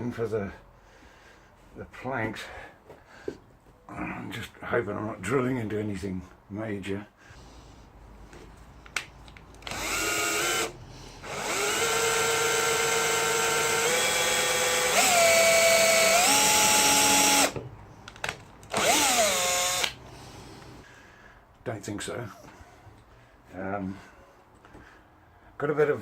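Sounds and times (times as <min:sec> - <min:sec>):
power drill driving screws into wood: 0:09.6 - 0:17.6, 0:18.7 - 0:20.0.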